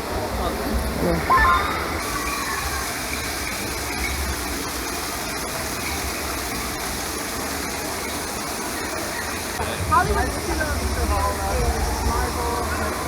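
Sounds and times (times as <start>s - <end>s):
falling water rushing: 0.0s - 13.0s.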